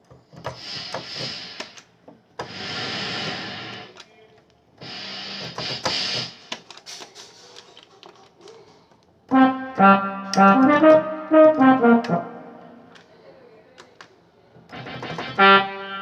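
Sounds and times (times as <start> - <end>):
synthesizer brass phrase: 9.3 - 13.0, 14.7 - 16.0.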